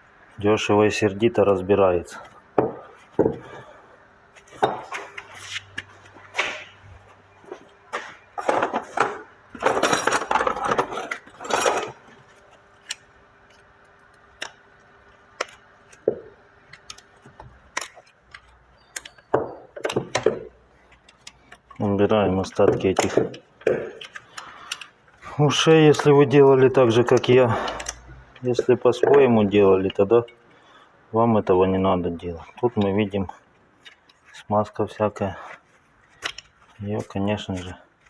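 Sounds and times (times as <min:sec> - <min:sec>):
metal parts clinking and knocking: 0:08.4 - 0:12.0.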